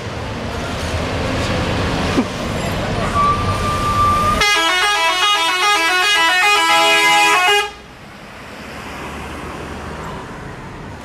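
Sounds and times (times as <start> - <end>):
multi-trumpet air horn melody: 4.4 - 7.8.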